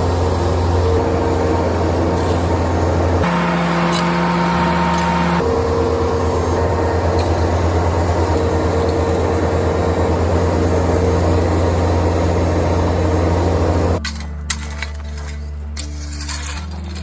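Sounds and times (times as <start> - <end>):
skid steer engine running: 0.0 - 14.2
high engine whine: 3.1 - 14.0.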